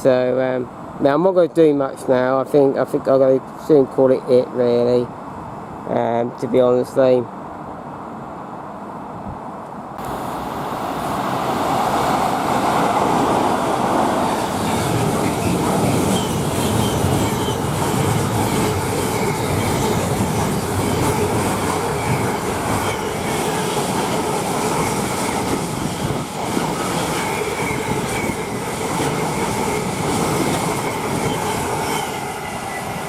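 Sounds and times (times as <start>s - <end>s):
freight train rumbling on rails: 7.3s - 33.0s.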